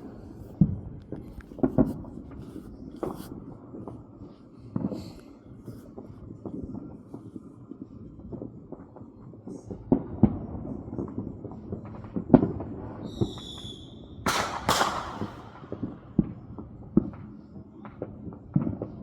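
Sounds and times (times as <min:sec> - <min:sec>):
firecracker cracks: 0:14.2 - 0:16.4
distant firework booms: 0:14.3 - 0:16.5.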